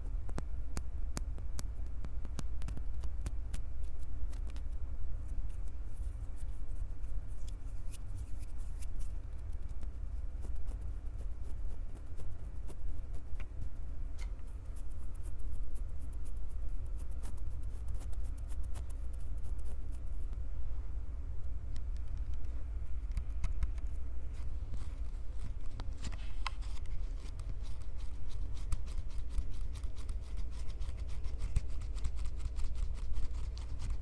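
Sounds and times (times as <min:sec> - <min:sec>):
crackles and clicks: 0:00.1 - 0:04.8.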